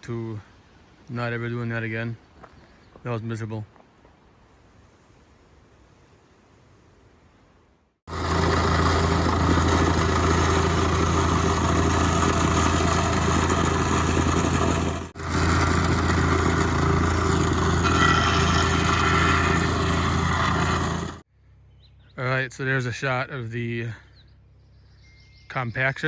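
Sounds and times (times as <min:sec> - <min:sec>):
compactor engine running: 0:08.1 - 0:21.2.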